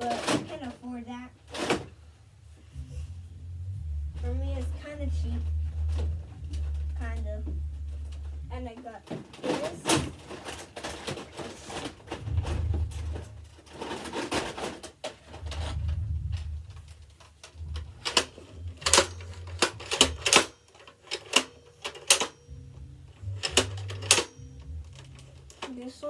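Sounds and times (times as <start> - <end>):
toy gun handling rumble: 9.1 - 15.8, 16.8 - 22.4, 23.4 - 25.8
toy gun clicks and knocks: 17.4 - 22.4, 23.4 - 24.4.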